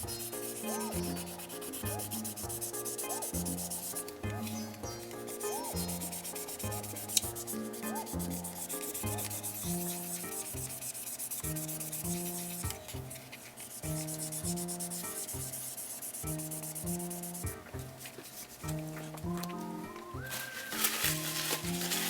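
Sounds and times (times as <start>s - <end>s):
sanding pad rubbing on plastic: 0.0s - 4.6s, 5.2s - 17.6s
background music: 0.0s - 22.0s.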